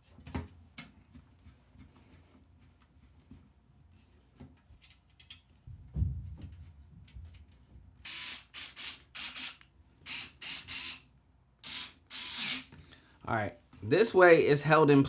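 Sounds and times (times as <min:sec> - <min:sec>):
dull thump: 0:05.9 - 0:06.6
screws being driven rasping: 0:08.1 - 0:11.0, 0:11.6 - 0:12.7.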